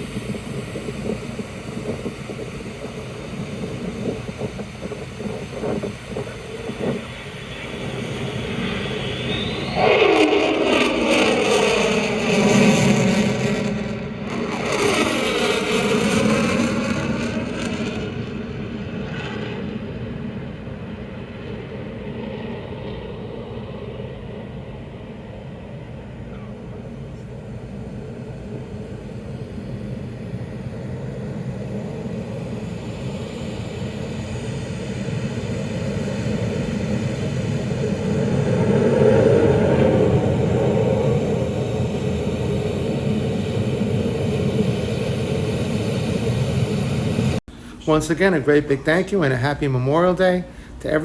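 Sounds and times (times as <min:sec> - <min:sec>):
military jet flying past: 0:00.0 - 0:51.0.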